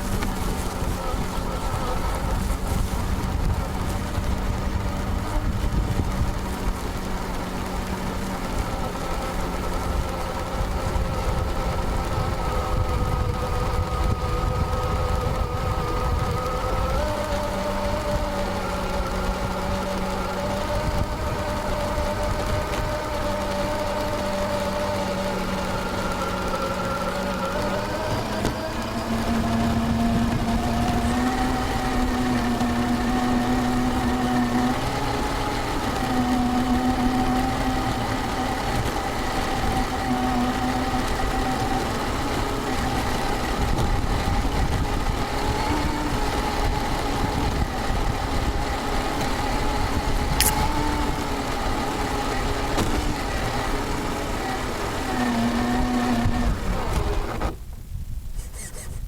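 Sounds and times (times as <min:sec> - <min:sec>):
electric motor and gears whining: 0:00.0 - 0:59.0
rough rumble: 0:00.0 - 0:59.0
sharp click: 0:50.4 - 0:50.6.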